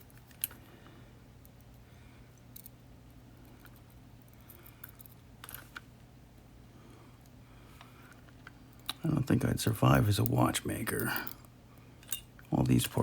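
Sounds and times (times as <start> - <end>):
steady low hum: 0.0 - 13.0
light metallic clicks of lock pins: 11.0 - 13.0.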